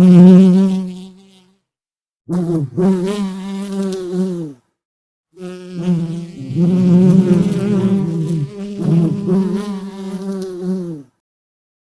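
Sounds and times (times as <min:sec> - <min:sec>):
bee buzzing in flight: 0:00.0 - 0:01.6, 0:02.3 - 0:04.6, 0:05.4 - 0:11.1.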